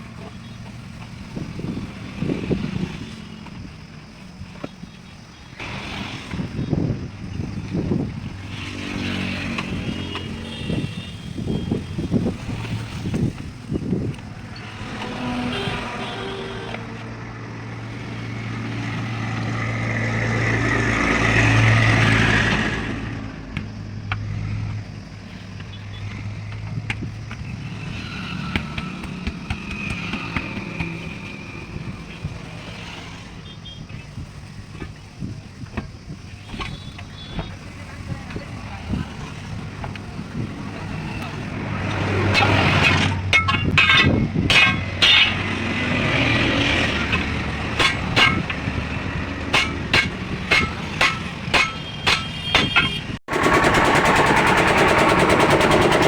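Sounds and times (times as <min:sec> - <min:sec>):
vehicle engines running: 0:00.0 - 0:56.0
sharp clicks and knocks: 0:41.9 - 0:45.5, 0:47.0 - 0:48.7, 0:49.4 - 0:56.0
sharp knocks: 0:47.1 - 0:48.6, 0:49.5 - 0:53.1.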